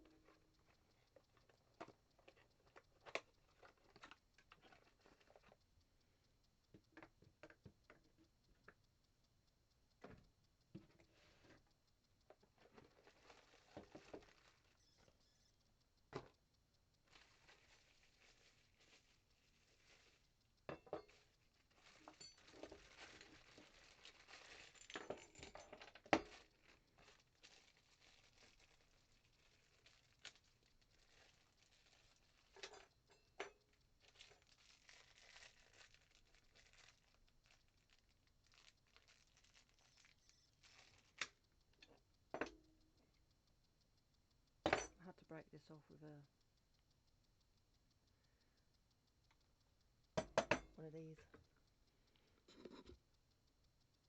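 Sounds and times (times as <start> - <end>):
rustling and crinkling: 0.0 - 5.7, 10.0 - 15.6, 16.2 - 42.1
sharp clicks and knocks: 0.0 - 54.0.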